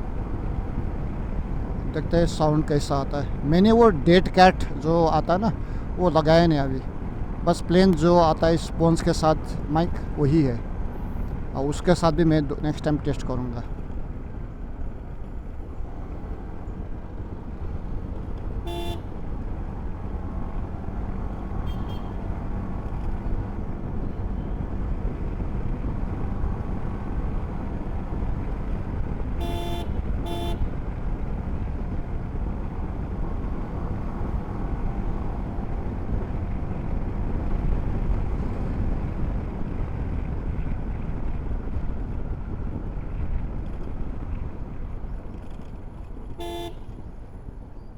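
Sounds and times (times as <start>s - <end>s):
road rumble: 0.0s - 47.9s
vehicle horn beeping: 18.6s - 19.2s, 21.6s - 22.2s, 29.4s - 30.8s, 46.4s - 47.0s.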